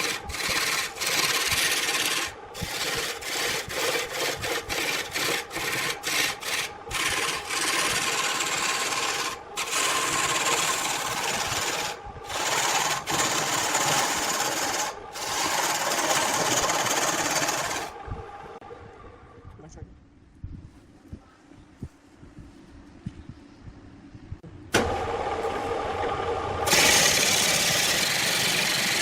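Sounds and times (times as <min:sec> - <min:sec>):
lathe tool scraping wood: 0:00.0 - 0:18.0, 0:26.7 - 0:29.0.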